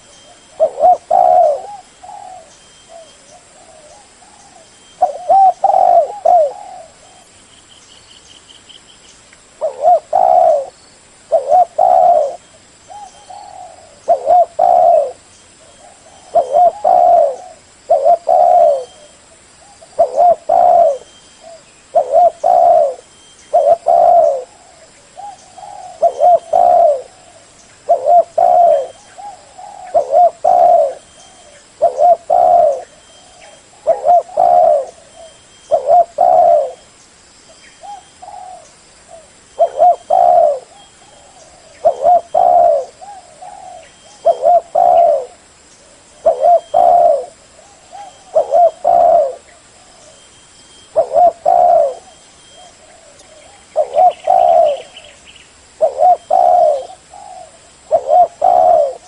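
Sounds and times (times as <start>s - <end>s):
dove cooing: 0.0s - 7.4s, 9.6s - 36.9s, 37.8s - 59.0s.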